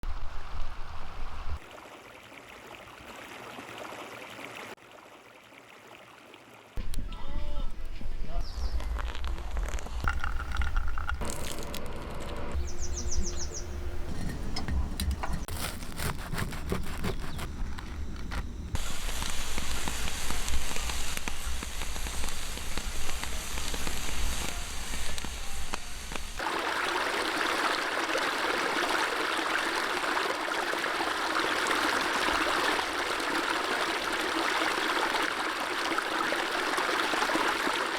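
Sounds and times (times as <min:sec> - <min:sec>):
flowing stream: 0:00.0 - 0:08.4, 0:12.5 - 0:17.5, 0:18.8 - 0:37.9
stream trickling over stones: 0:01.6 - 0:07.0, 0:08.9 - 0:11.8, 0:26.1 - 0:37.9
sharp crackles and clicks: 0:08.5 - 0:12.6, 0:16.8 - 0:26.4.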